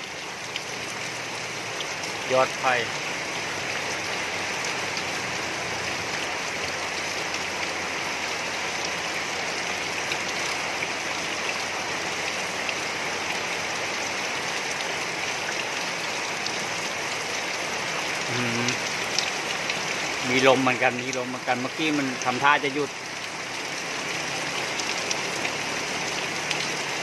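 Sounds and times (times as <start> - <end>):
rain hissing: 0.0 - 27.0
sharp drip ticks: 0.1 - 3.1, 17.4 - 27.0.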